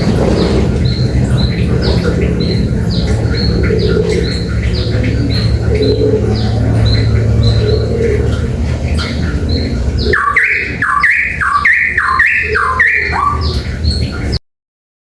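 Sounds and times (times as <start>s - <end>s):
low background rumble: 0.0s - 14.4s
songbird calling: 0.0s - 14.4s.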